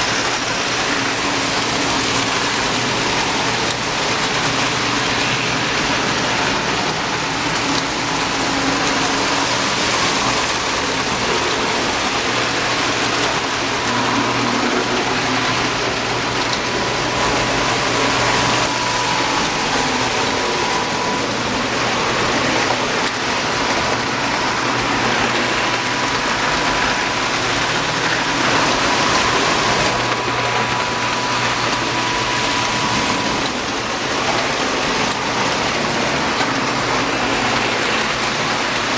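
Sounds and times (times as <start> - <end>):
toy trains rumbling on track: 0.0 - 38.9.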